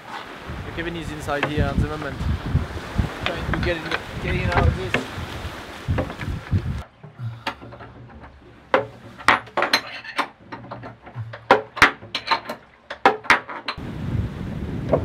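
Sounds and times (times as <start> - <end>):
tools clinking against metal: 7.4 - 13.8.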